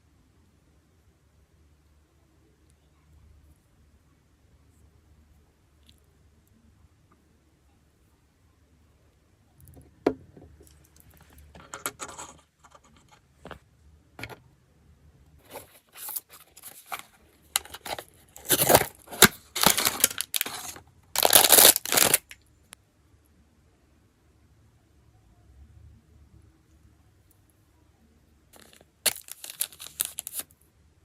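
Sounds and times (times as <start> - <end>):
packaging crinkling: 15.4 - 22.4, 28.6 - 30.5
packaging tearing: 17.6 - 22.4, 28.6 - 30.5.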